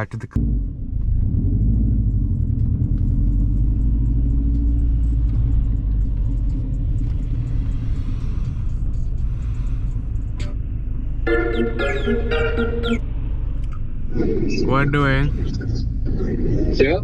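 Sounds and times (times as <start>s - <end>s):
car engine rumbling: 0.0s - 17.0s.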